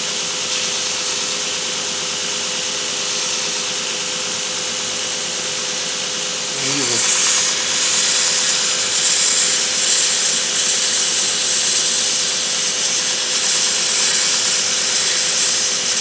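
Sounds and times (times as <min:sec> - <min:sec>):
belt grinder abrasive hiss: 0:06.4 - 0:16.0.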